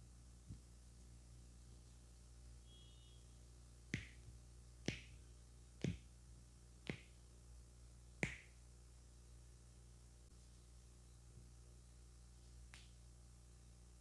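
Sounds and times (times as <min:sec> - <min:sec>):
finger snaps: 0:04.0 - 0:04.2, 0:04.8 - 0:05.2, 0:05.8 - 0:06.1, 0:06.8 - 0:07.2, 0:08.2 - 0:08.6, 0:12.7 - 0:13.0.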